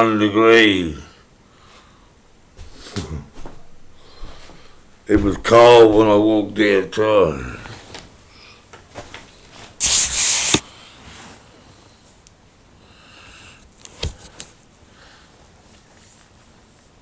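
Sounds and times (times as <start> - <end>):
loud hissy breath: 9.8 - 10.6.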